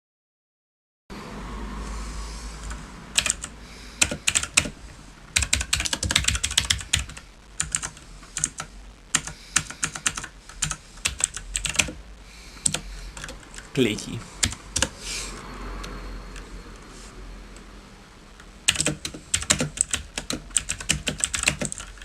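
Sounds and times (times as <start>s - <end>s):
clicky mechanical keyboard typing: 2.6s - 4.8s, 5.4s - 12.0s, 18.7s - 22.0s.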